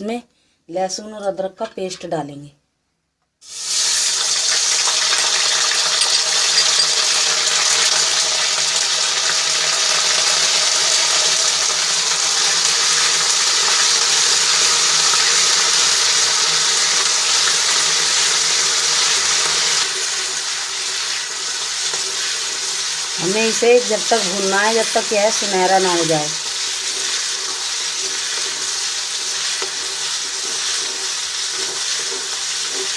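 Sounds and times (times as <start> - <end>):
paste sizzling in hot oil: 3.4 - 32.9.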